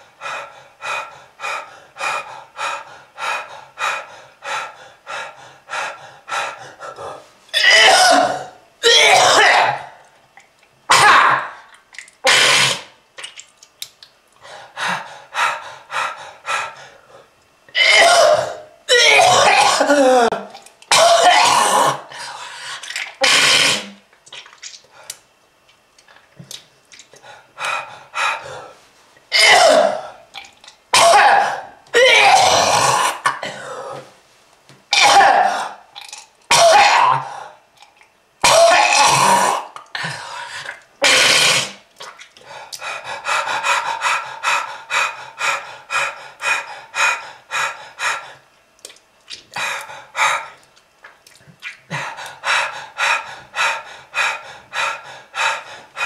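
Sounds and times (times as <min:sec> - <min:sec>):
person coughing hard: 0:07.6 - 0:09.9, 0:10.9 - 0:11.6, 0:17.8 - 0:22.1, 0:29.3 - 0:30.1, 0:31.0 - 0:33.7, 0:34.9 - 0:35.8, 0:36.5 - 0:37.3, 0:38.4 - 0:39.6, 0:41.0 - 0:41.7.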